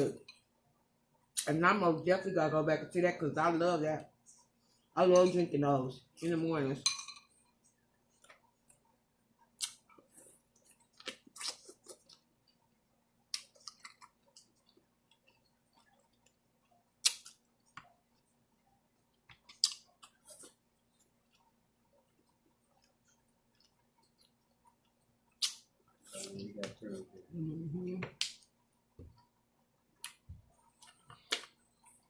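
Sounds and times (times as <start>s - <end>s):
chewing and mouth smacks: 9.5s - 12.6s, 13.3s - 18.4s, 19.1s - 26.4s, 30.0s - 32.0s.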